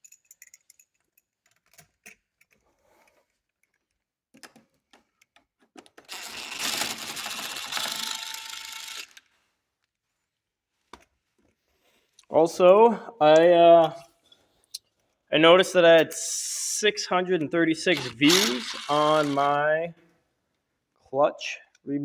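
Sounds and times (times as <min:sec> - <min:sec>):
hand tools clicking and knocking: 0:04.4 - 0:09.2, 0:17.9 - 0:19.6
rapid mechanical rattling of tool: 0:06.1 - 0:09.2, 0:17.9 - 0:19.6.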